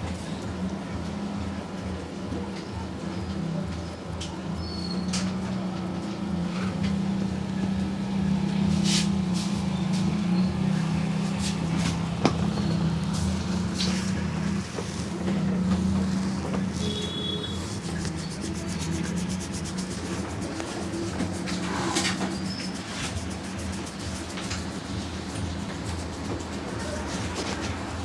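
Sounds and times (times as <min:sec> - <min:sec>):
steady low hum: 0:06.1 - 0:28.0
hands rubbing over skin: 0:13.1 - 0:28.0.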